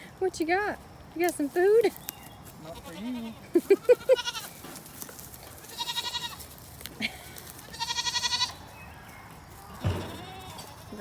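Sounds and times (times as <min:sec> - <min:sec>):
goat bleating: 0:02.6 - 0:04.5, 0:05.6 - 0:06.5, 0:07.6 - 0:08.7, 0:09.8 - 0:11.0.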